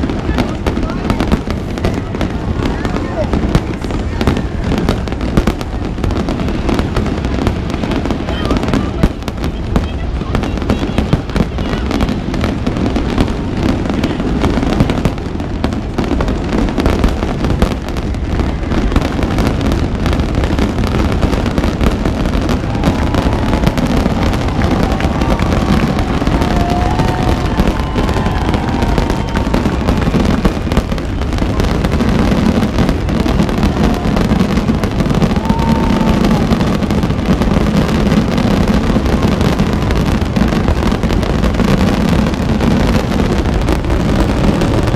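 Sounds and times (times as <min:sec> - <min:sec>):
fireworks bangs and crackling: 0:00.0 - 0:44.9
firework whistles: 0:15.7 - 0:44.9.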